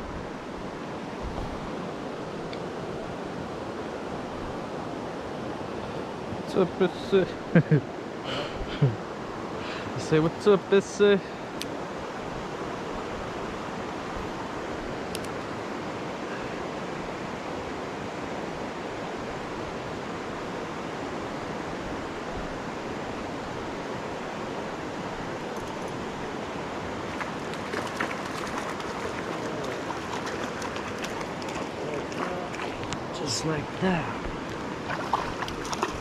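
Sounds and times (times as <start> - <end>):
flowing river water: 0.0 - 36.0
light clicks: 15.1 - 15.4.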